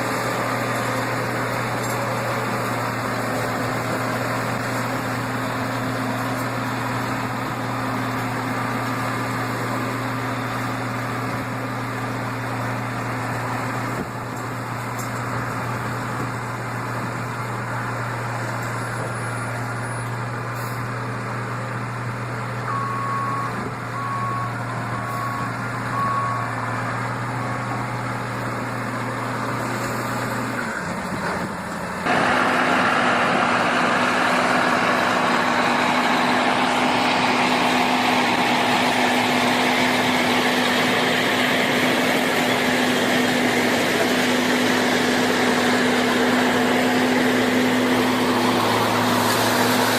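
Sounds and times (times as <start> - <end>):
heavy machinery engines running: 0.0 - 49.9
reversing alarm beeping: 22.7 - 27.0
harsh machine noise: 32.0 - 49.9.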